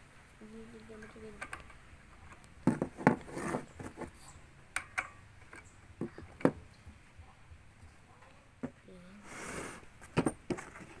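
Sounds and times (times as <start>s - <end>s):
scraping rub: 2.7s - 4.3s.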